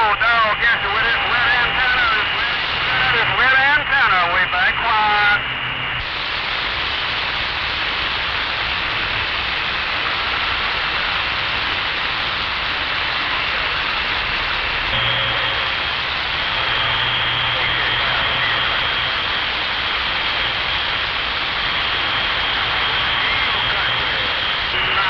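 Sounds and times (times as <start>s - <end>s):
radio static hiss: 0.0s - 25.0s
low hum: 0.1s - 25.0s
faint steady tone: 14.8s - 25.0s.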